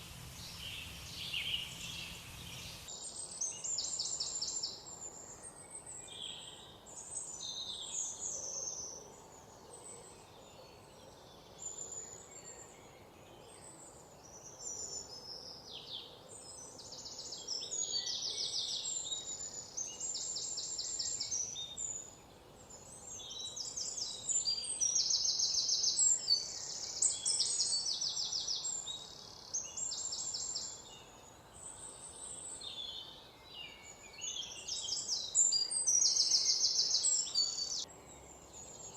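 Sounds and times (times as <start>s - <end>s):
faint steady hiss: 0.0s - 38.9s
songbirds singing: 0.0s - 38.9s.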